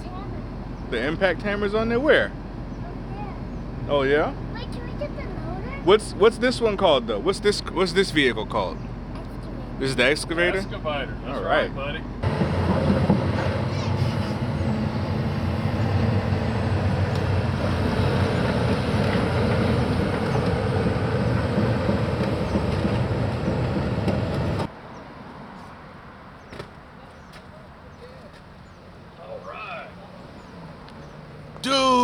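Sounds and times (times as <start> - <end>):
excavator diesel engine running: 6.6 - 24.7.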